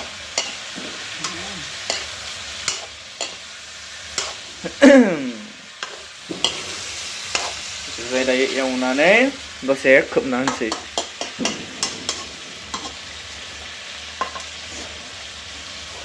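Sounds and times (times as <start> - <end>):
spoon scraping a pan: 0.0 - 4.8, 5.7 - 8.7, 10.4 - 16.0
curry sizzling in a pan: 0.0 - 16.0
person speaking: 1.2 - 1.7, 4.6 - 5.6.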